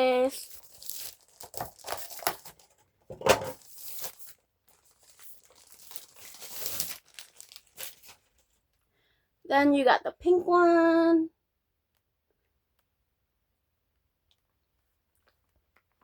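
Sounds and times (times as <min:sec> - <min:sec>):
packaging crinkling and rustling: 0:00.0 - 0:08.7.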